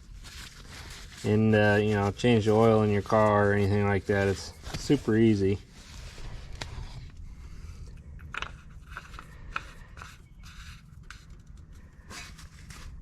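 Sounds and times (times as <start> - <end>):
steady low hum: 0.0 - 13.0
small parts clicking and scraping: 7.9 - 11.8.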